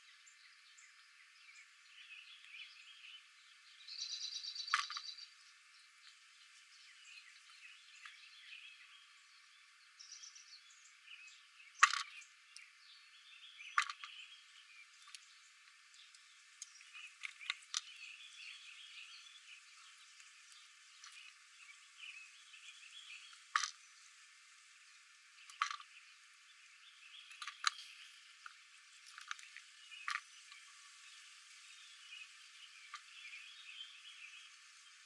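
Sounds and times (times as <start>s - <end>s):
small animals chirping: 4.0s - 5.4s.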